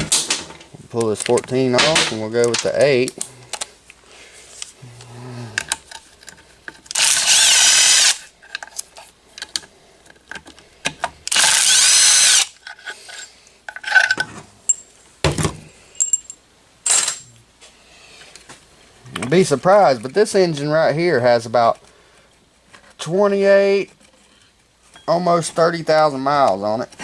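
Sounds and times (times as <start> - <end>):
power tool spinning out bolts: 6.9 - 8.3, 11.3 - 12.6
metallic clicks of tools and bolts: 16.0 - 17.4.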